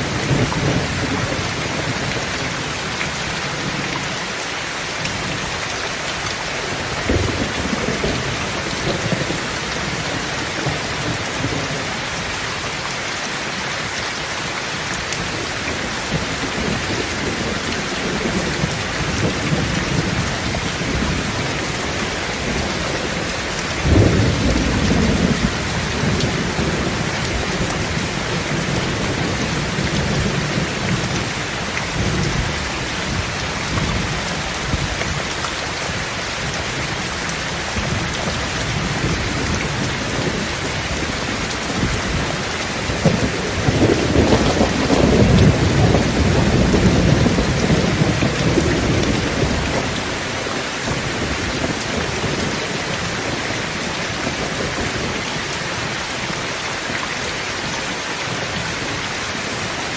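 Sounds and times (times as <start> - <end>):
heavy rain: 0.0 - 59.9
rolling thunder: 6.8 - 11.9, 16.0 - 35.0, 37.7 - 50.2.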